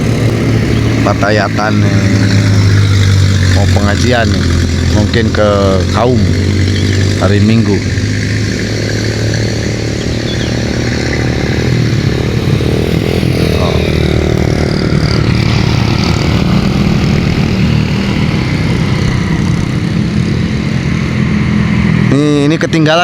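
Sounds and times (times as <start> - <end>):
motorcycle engine: 0.0 - 23.0
traffic passing close by: 0.0 - 23.0.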